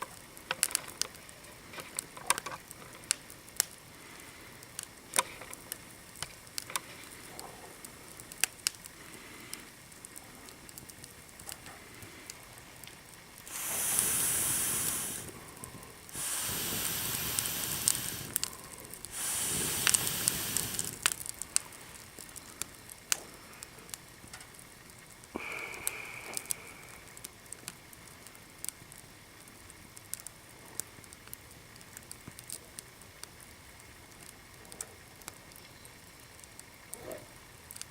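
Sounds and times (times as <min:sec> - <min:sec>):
small fire crackling: 0:00.0 - 0:37.9
rushes of hiss: 0:13.4 - 0:22.1, 0:25.3 - 0:27.3.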